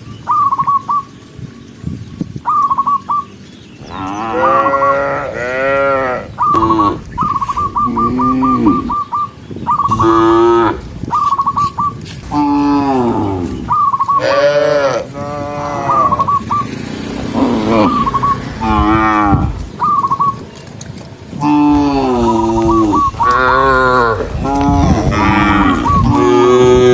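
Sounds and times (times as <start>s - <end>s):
cattle mooing: 3.8s - 9.2s, 9.9s - 10.9s, 12.2s - 16.3s, 17.1s - 19.8s, 21.3s - 26.9s.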